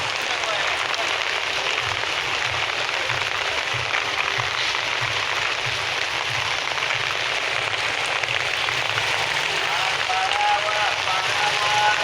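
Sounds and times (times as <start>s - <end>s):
rain hiss: 0.0s - 12.0s.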